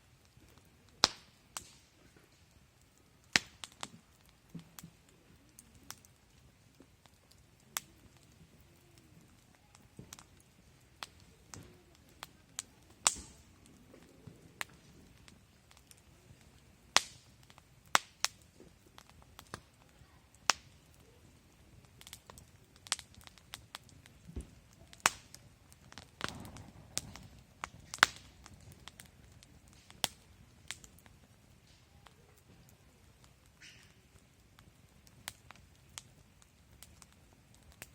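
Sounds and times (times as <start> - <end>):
campfire crackling and popping: 0.0 - 37.9.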